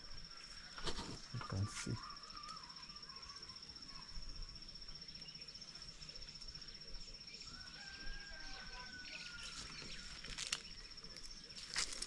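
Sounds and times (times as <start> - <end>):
insect trilling: 0.0 - 12.0
quiet outdoor ambience: 0.0 - 12.0.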